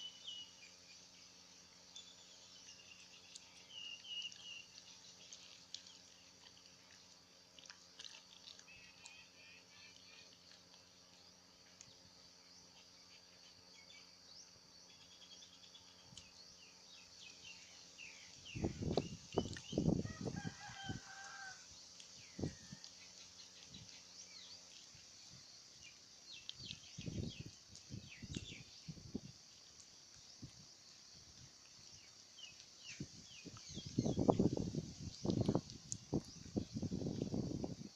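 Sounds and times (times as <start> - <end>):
steady high hiss: 0.0 - 5.4
small birds chirping: 0.0 - 20.0, 21.8 - 37.9
low steady hum: 0.0 - 37.9
rooster crowing: 20.0 - 21.7.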